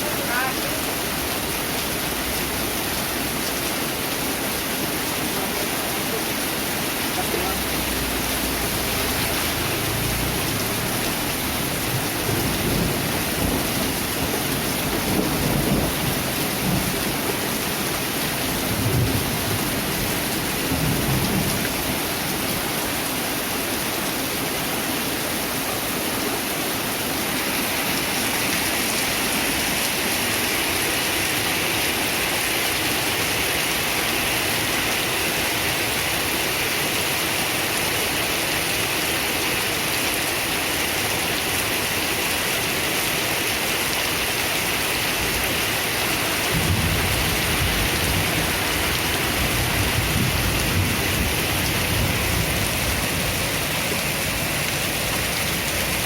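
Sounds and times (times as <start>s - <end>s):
heavy rain falling: 0.0s - 56.0s
thunder rumbling: 46.5s - 53.4s.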